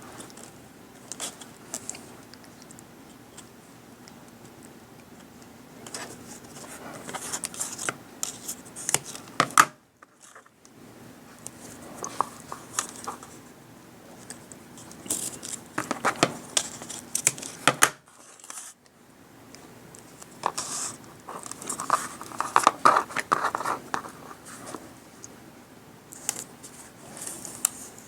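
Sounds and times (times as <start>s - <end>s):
crinkling rustles: 11.3s - 13.5s, 20.0s - 25.0s.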